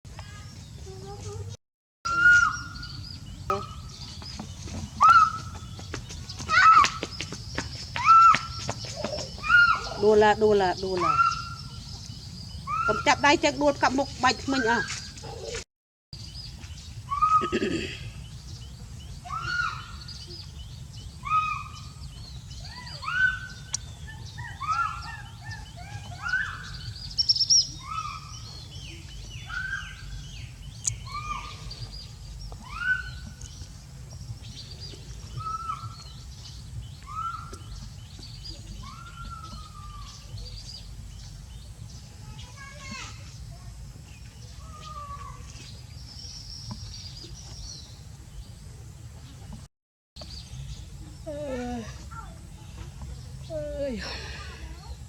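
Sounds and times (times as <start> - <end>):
steady low rumble: 39.6 - 44.7.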